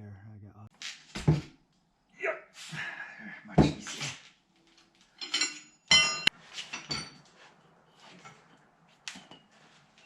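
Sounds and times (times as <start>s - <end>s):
metal tools clinking: 4.6s - 7.4s.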